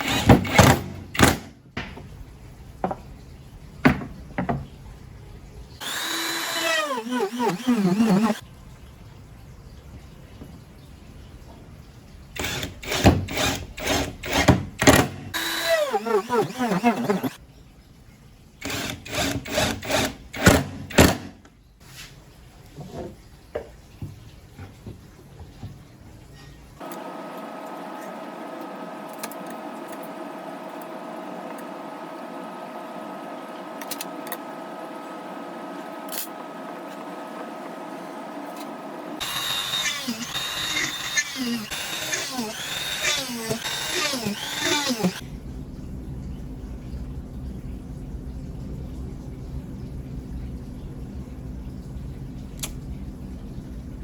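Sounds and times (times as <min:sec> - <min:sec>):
rhythmic rasping hand-tool strokes: 0:05.8 - 0:08.4, 0:12.4 - 0:17.4, 0:39.2 - 0:45.2
small electric motor running: 0:05.8 - 0:08.4, 0:12.4 - 0:17.4, 0:39.2 - 0:45.2.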